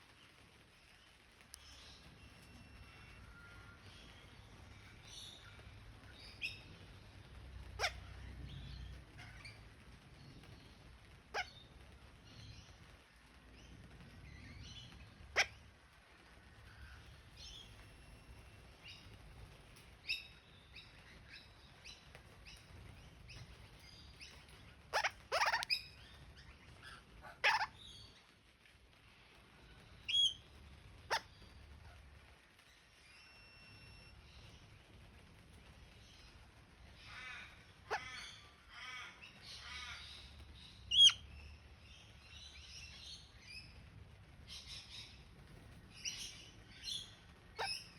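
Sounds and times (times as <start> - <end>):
faint high chirps: 1.5 - 5.6, 33.0 - 34.7
parrot chirps and chattering: 7.6 - 9.8, 11.2 - 12.6, 14.3 - 15.7, 22.4 - 28.2, 30.0 - 32.2, 36.9 - 43.8, 44.4 - 47.9
parrot squawking: 7.8 - 8.2, 11.3 - 11.6, 15.3 - 15.6, 24.9 - 28.0, 31.1 - 32.0, 37.0 - 40.3, 40.9 - 41.2, 46.1 - 47.9.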